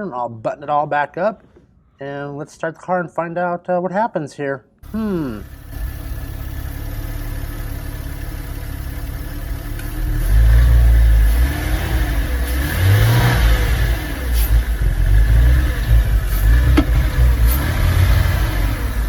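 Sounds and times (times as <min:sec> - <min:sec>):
car engine revving: 0:04.9 - 0:19.0.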